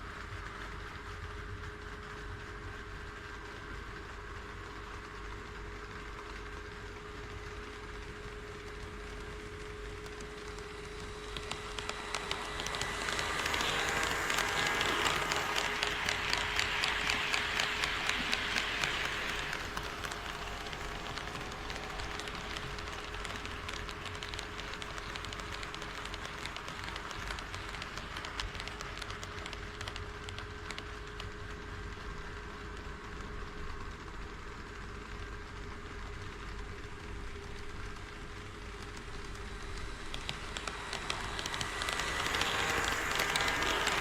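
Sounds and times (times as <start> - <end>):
train wheels clicking over track joints: 4.9 - 32.8, 36.3 - 44.0
model train motor hum: 6.2 - 30.9, 36.4 - 44.0.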